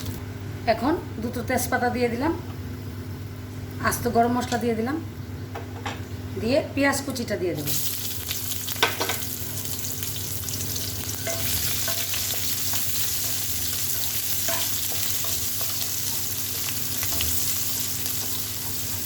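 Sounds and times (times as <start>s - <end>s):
onion sizzling in oil: 7.6s - 19.0s
stirring in a pan: 10.5s - 19.0s.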